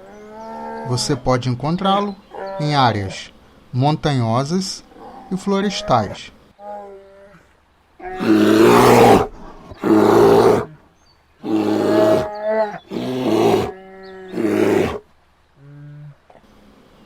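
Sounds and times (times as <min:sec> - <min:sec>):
bear roaring: 0:08.0 - 0:10.8, 0:11.4 - 0:15.0.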